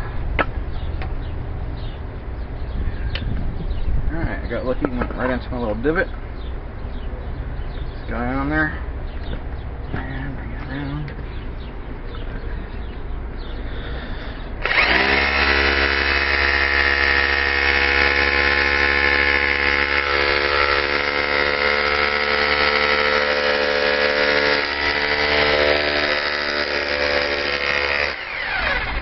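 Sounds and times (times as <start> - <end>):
hammer drill hammering rivet: 14.6 - 29.0.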